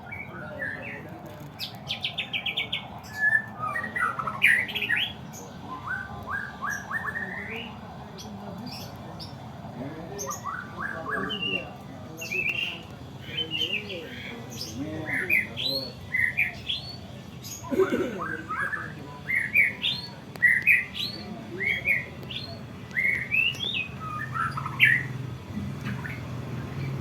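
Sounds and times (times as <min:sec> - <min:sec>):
bird singing whistled notes: 0:18.4 - 0:27.0.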